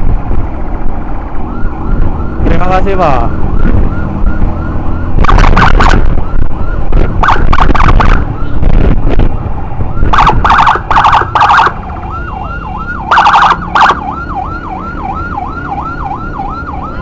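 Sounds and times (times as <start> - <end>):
road and wind rumble: 0.0 - 17.0
ambulance siren wailing: 1.2 - 17.0.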